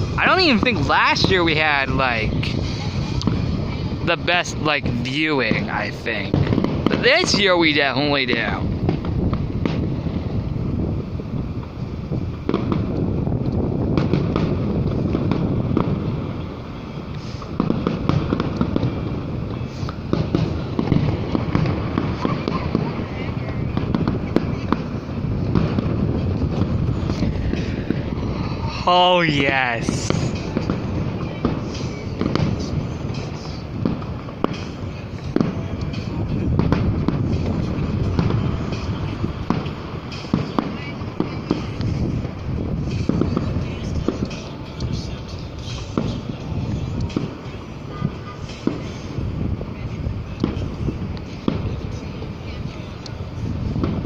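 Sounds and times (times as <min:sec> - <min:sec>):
fireworks popping and crackling: 0:00.0 - 0:54.0
low rumble: 0:18.6 - 0:28.9.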